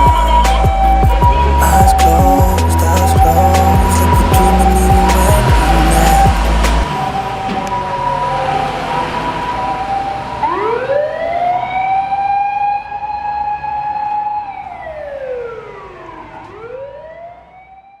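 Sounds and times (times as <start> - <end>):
electronic siren wail: 0.0 - 18.0
steady high siren tones: 0.0 - 18.0.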